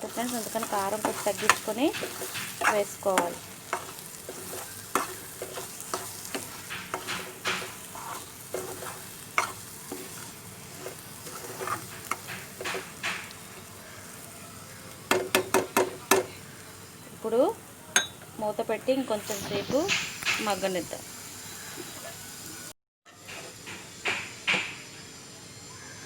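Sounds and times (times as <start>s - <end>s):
spoon stirring in pan: 0.0s - 14.3s
masala sizzling in oil: 0.0s - 24.4s.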